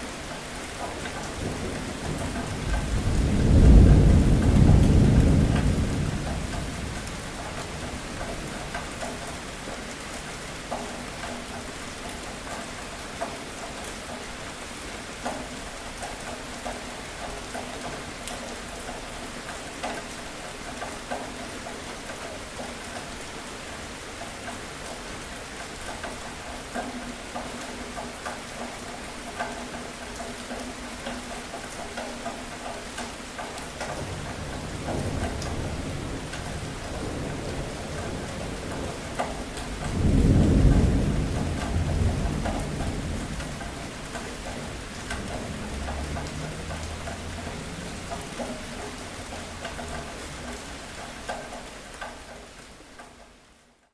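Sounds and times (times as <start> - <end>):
steady rain falling: 0.0 - 53.9
rumble of thunder: 1.2 - 9.1, 34.0 - 50.7.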